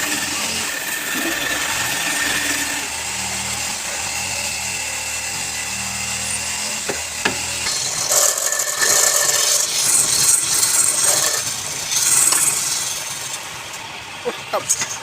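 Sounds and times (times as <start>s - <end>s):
lathe motor hum: 0.0s - 15.0s
tool cutting spinning wood: 0.0s - 15.0s
sharp knocks: 6.8s - 7.8s.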